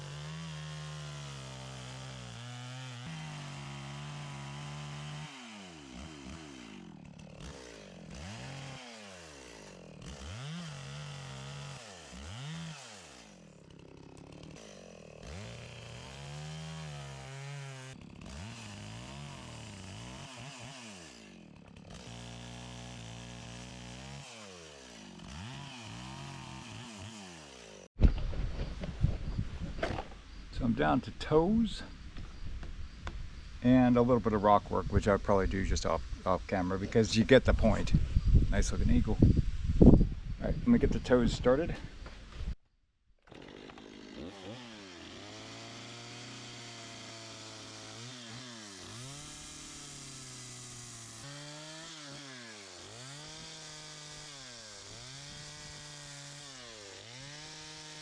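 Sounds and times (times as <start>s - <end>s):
chainsaw cutting wood: 0.0s - 40.0s, 43.2s - 58.0s.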